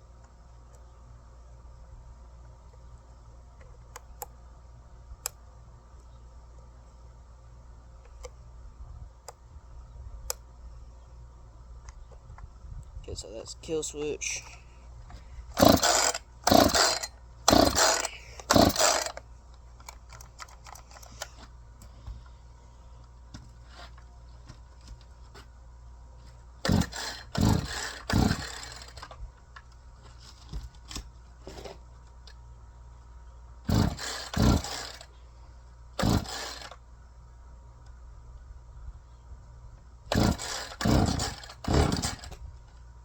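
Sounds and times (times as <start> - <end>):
chainsaw starter cord pulls: 15.5 - 19.2, 26.6 - 29.2, 33.7 - 35.1, 36.0 - 36.8, 40.1 - 42.4
engine cranking over: 15.5 - 19.2, 26.6 - 29.1, 33.7 - 35.0, 36.0 - 36.7, 40.1 - 42.4.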